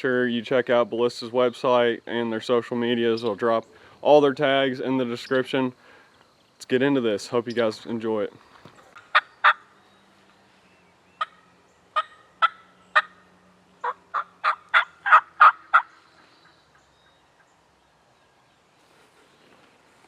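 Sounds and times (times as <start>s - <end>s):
turkey yelps: 9.0s - 9.7s, 11.2s - 11.4s, 12.0s - 13.2s, 13.8s - 16.0s.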